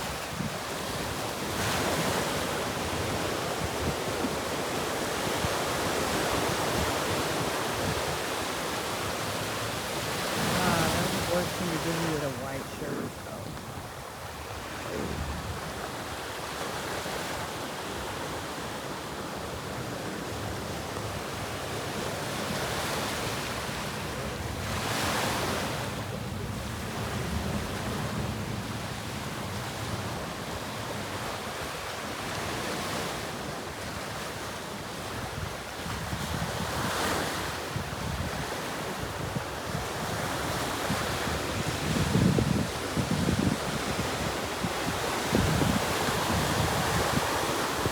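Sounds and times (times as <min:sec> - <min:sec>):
wind buffeting microphone: 0:00.0 - 0:09.1, 0:09.9 - 0:18.3, 0:35.1 - 0:47.9
ocean waves breaking: 0:00.0 - 0:47.9.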